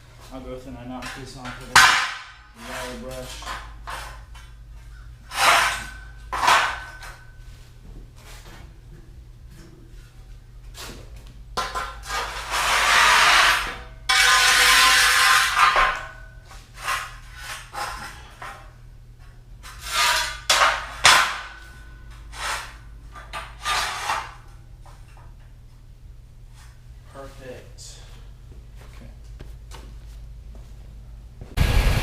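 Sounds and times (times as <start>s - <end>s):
low steady hum: 0.0s - 32.0s
harsh scratchy grinding on metal: 5.3s - 6.7s, 12.0s - 15.9s, 19.6s - 21.3s, 23.4s - 24.4s.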